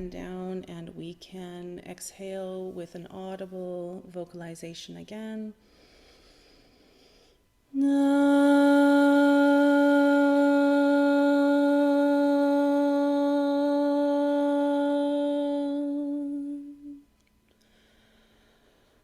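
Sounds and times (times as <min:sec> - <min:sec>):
woman humming a steady tone: 0:07.7 - 0:17.1.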